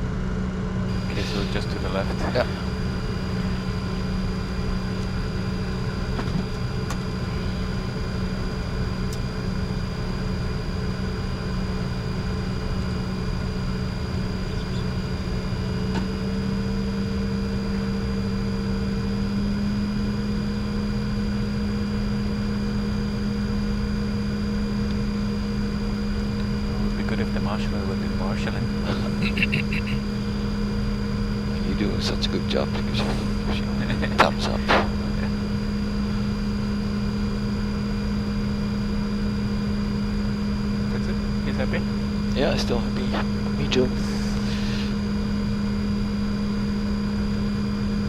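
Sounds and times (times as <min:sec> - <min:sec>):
jet engine and airflow hum: 0:00.0 - 0:48.0
higher tone: 0:28.7 - 0:30.5.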